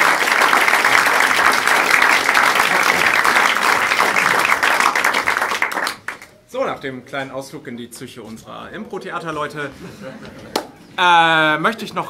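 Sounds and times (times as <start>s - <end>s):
audience applauding: 0.0s - 6.3s.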